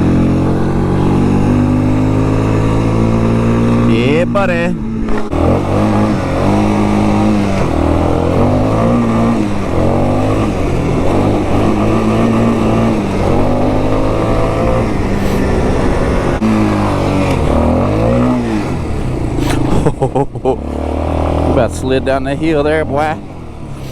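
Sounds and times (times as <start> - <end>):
atv engine revving: 0.0 - 23.9.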